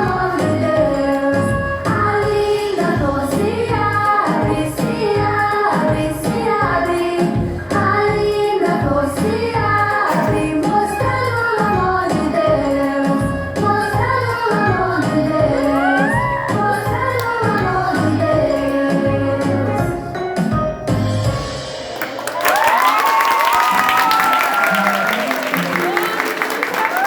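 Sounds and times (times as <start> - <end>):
children singing: 0.0 - 20.0
musical backing: 0.0 - 27.0.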